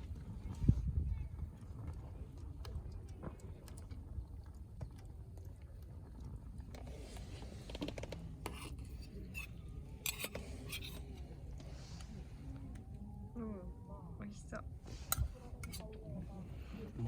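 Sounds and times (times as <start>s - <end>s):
cooking utensils clicking: 9.4s - 11.1s.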